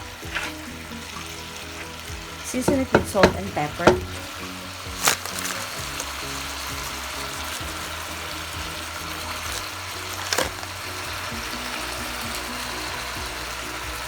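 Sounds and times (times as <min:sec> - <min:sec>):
background music: 0:00.0 - 0:14.0
chicken sizzling in a pan: 0:00.0 - 0:14.0
sharp knock: 0:02.7 - 0:04.3.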